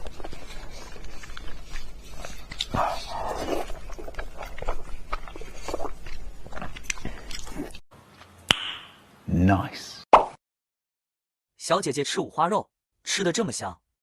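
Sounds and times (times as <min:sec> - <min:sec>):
person chewing food: 0:00.0 - 0:07.8.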